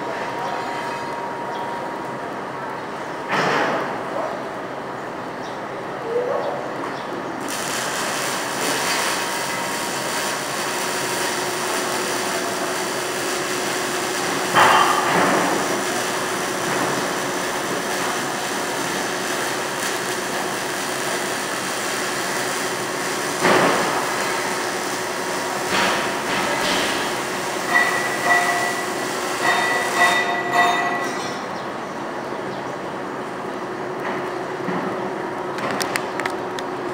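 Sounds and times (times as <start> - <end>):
arc welding hiss and crackle: 7.3 - 31.5
short ringing metallic tones: 27.6 - 31.5.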